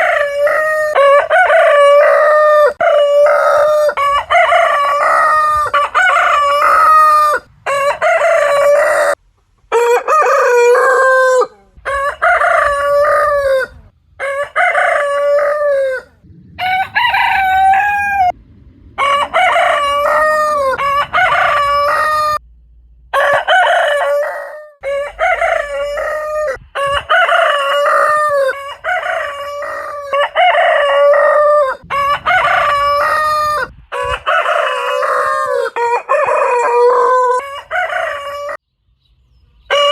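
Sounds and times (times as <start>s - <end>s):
roosters crowing: 0.0s - 22.4s, 23.1s - 38.6s, 39.7s - 39.9s.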